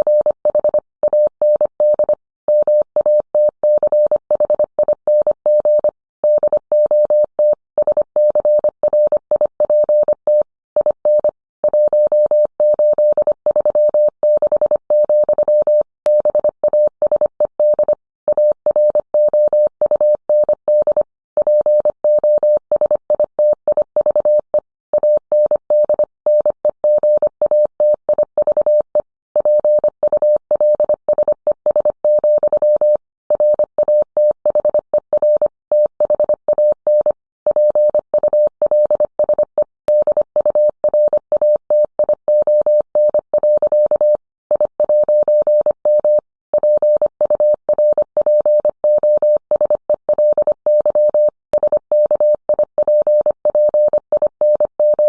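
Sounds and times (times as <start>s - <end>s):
morse code tone: 28.4s - 55.0s.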